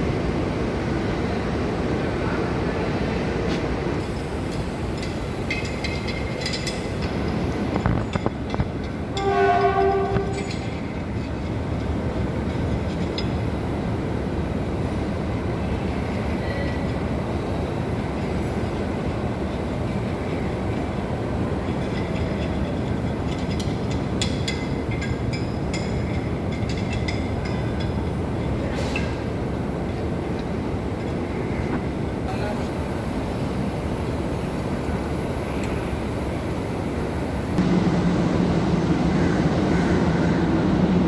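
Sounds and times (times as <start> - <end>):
locomotive running rumble: 0.0 - 41.0
locomotive horn blast: 9.1 - 10.8.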